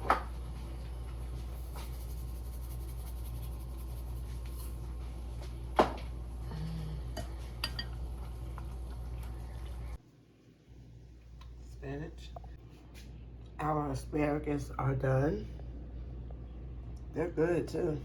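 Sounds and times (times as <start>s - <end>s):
dishes and utensils clinking: 7.2s - 8.0s.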